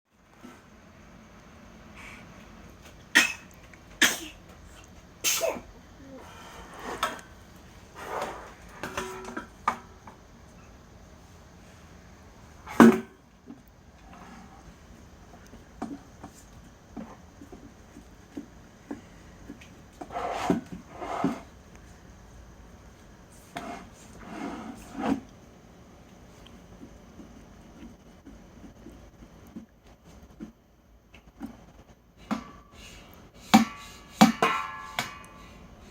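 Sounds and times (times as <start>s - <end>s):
baby sneezing: 3.1s - 4.4s, 5.2s - 5.7s
object scraping along floor: 6.2s - 9.5s, 20.0s - 21.6s, 23.5s - 25.3s.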